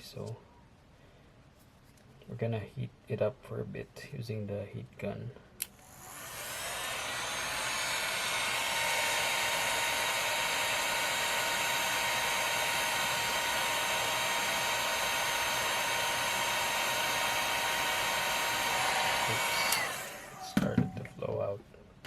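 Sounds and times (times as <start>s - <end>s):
heat gun blowing air: 5.7s - 21.4s.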